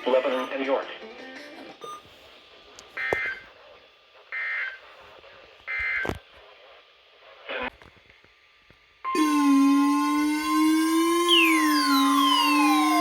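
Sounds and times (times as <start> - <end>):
buzzy digital tones: 9.2 - 13.0.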